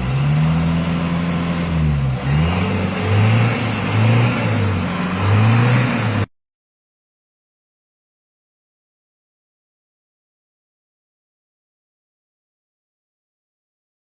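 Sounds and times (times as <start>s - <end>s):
engine revving: 0.0s - 6.3s.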